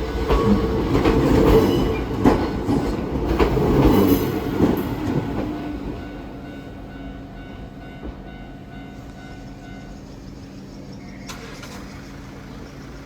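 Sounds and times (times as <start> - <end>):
train wheels clacking over rail joints: 0.0 - 5.7
electric train passing: 0.0 - 13.0.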